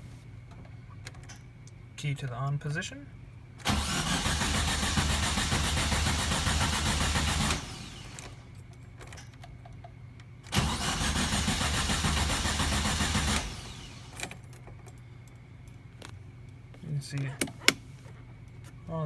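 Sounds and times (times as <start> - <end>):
engine starter cranking: 3.6 - 8.4, 10.5 - 14.4.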